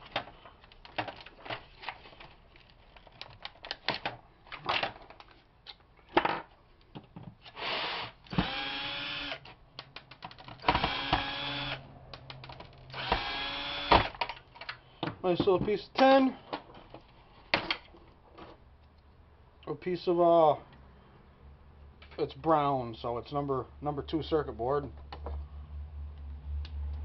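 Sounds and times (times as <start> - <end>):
plastic keyboard parts rattling: 0.1 - 5.4, 9.8 - 10.7
power screwdriver whirring: 7.5 - 9.5, 10.6 - 11.8, 12.9 - 14.2.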